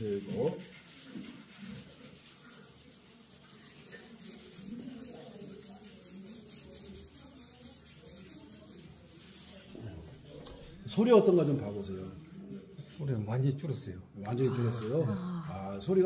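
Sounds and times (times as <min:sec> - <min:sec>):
hands rubbing skin and clothing: 0:00.0 - 0:10.8.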